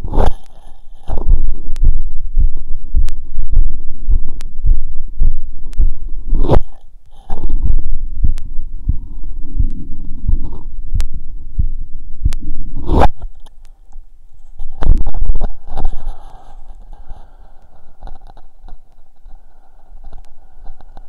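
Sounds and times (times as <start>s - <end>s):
heartbeat through stethoscope: 1.0s - 13.1s, 14.8s - 16.0s
rubbing rustle: 14.4s - 20.8s.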